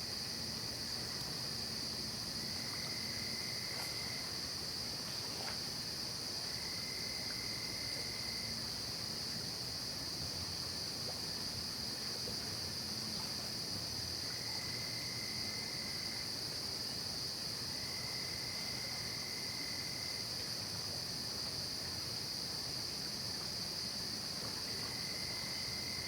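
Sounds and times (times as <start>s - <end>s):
low insect trill: 0.0s - 10.0s, 10.8s - 20.5s, 22.3s - 26.0s
insects high-pitched drone: 0.0s - 20.5s, 22.3s - 26.0s.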